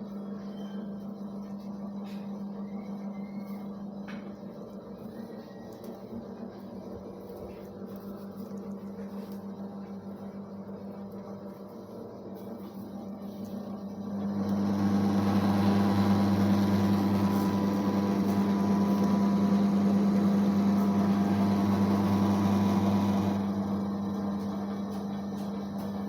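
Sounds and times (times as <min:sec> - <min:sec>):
electric motor humming: 0:14.0 - 0:24.9.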